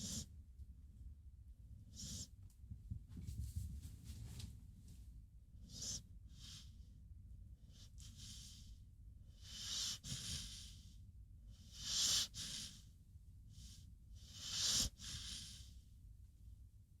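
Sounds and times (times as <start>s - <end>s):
dog snoring: 0.0s - 0.3s, 1.9s - 2.3s, 5.6s - 6.8s, 7.7s - 12.9s, 13.5s - 15.8s.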